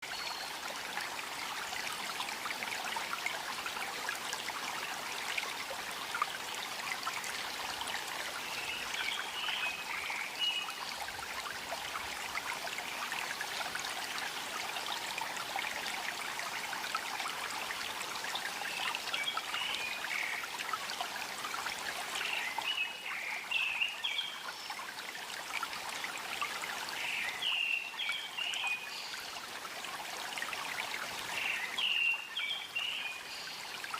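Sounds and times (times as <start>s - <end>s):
stream trickling and babbling: 0.0s - 33.9s.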